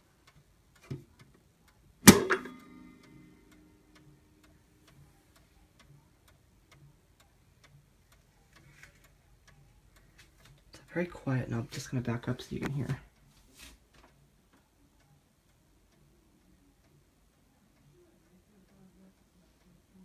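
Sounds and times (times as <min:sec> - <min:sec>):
clock ticking: 0:00.0 - 0:13.3
clock door shutting: 0:02.1 - 0:03.7.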